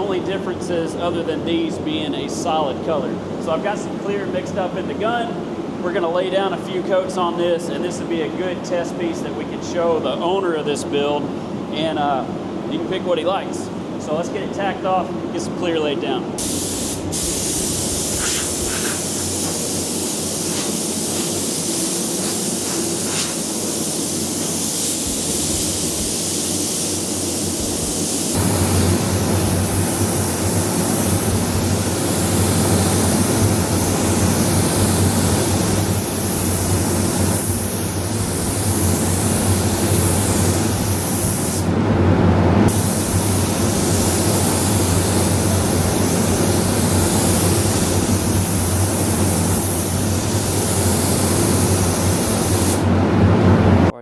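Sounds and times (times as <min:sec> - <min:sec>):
paint spray gun hissing: 0:16.4 - 0:41.7, 0:42.7 - 0:52.9.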